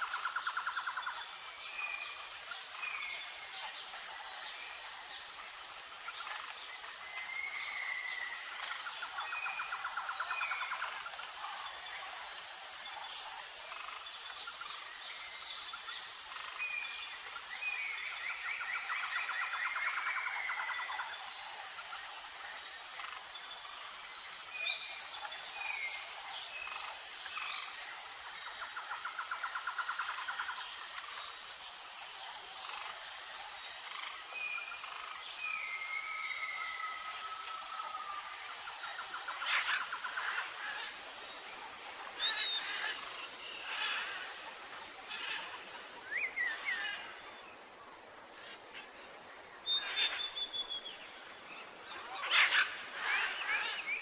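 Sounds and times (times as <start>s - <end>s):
high-pitched insect drone: 0.0s - 54.0s
whistled bird calls: 49.6s - 51.0s.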